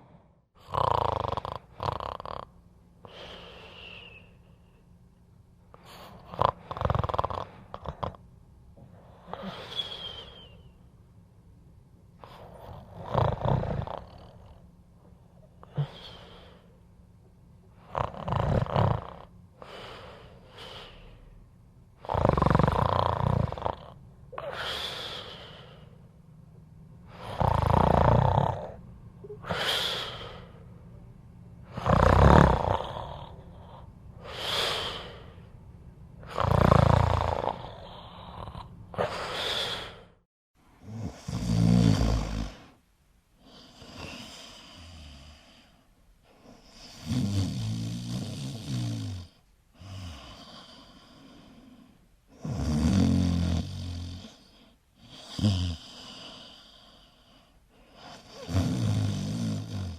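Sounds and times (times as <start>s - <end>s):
person snoring: 0.0s - 4.2s, 5.8s - 8.2s, 12.2s - 14.6s, 15.6s - 16.7s, 17.8s - 21.1s, 22.0s - 26.0s, 27.1s - 30.6s, 31.7s - 35.5s, 36.2s - 40.2s, 40.8s - 42.8s, 46.5s - 57.2s, 58.0s - 59.9s
breathy hiss of breath: 3.0s - 4.6s, 8.9s - 10.7s, 19.6s - 21.4s, 24.4s - 26.1s, 29.4s - 30.7s, 33.6s - 35.5s, 39.0s - 40.2s, 49.7s - 52.5s, 54.2s - 58.6s.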